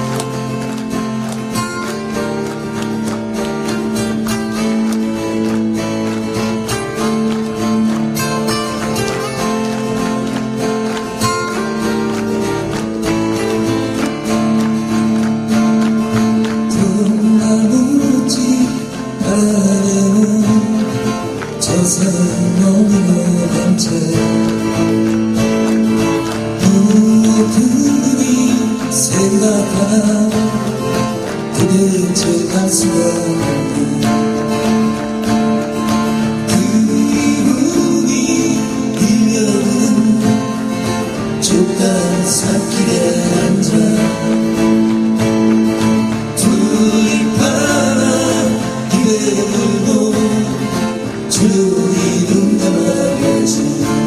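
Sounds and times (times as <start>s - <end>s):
acoustic guitar: 0.0s - 54.0s
person singing: 16.5s - 24.9s, 26.6s - 34.9s, 36.4s - 44.8s, 46.2s - 54.0s.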